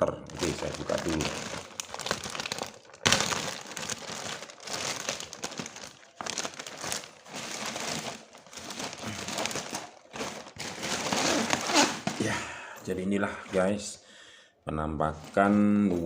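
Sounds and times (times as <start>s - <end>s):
plastic packaging crinkling: 0.2s - 12.4s.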